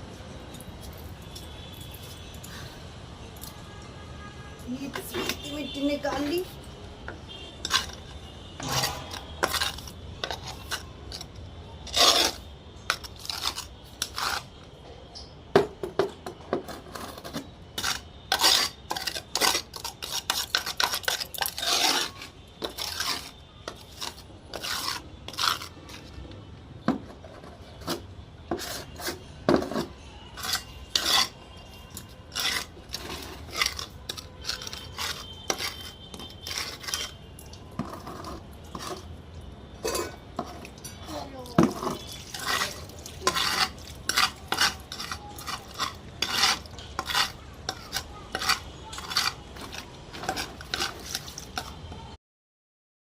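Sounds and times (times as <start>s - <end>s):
pots being scrubbed: 8.6s - 11.2s, 11.9s - 14.5s, 16.6s - 26.1s, 27.3s - 37.2s, 37.8s - 39.1s, 39.8s - 51.8s.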